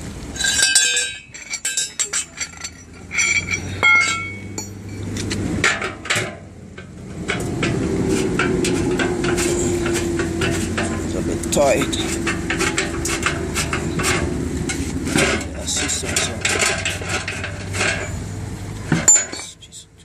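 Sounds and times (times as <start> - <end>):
wrench clinking on metal: 0.4 - 5.1, 18.9 - 19.6.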